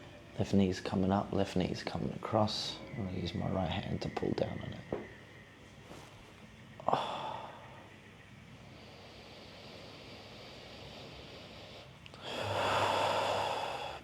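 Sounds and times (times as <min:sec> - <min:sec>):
man breathing: 0:06.8 - 0:08.0, 0:08.6 - 0:14.0.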